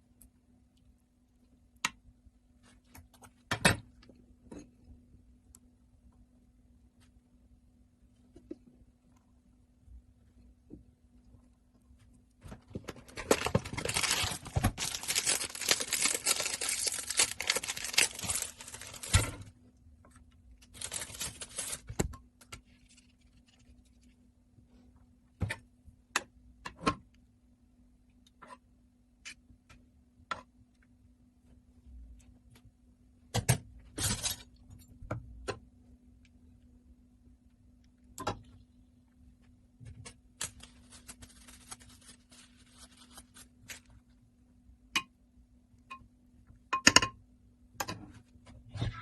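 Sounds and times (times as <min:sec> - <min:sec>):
faint steady hum: 0:00.0 - 0:49.0
rustling and crinkling: 0:11.8 - 0:24.3, 0:39.3 - 0:44.2.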